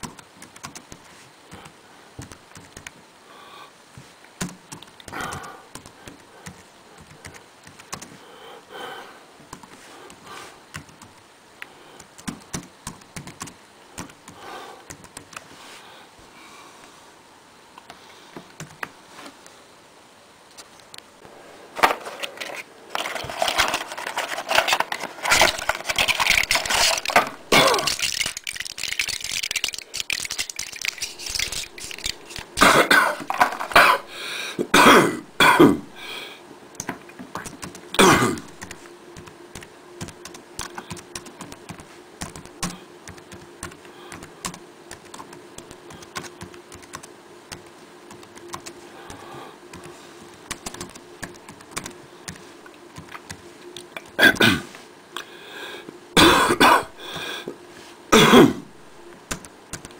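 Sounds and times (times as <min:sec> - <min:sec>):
steady hum: 0:00.0 - 0:59.9
person coughing: 0:27.5 - 0:28.0, 0:32.6 - 0:35.9, 0:38.0 - 0:38.6, 0:54.2 - 0:54.8, 0:56.2 - 0:57.5, 0:58.1 - 0:58.7.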